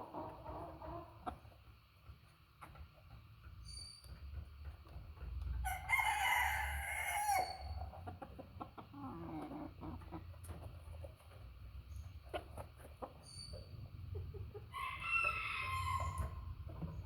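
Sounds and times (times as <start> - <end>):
rooster crowing: 5.6 - 7.7, 14.7 - 16.4.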